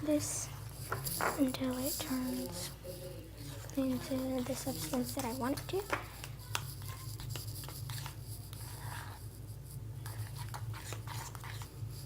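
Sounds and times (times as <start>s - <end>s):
steady low hum: 0.0s - 12.0s
utensil scraping sticky slime: 3.5s - 12.0s.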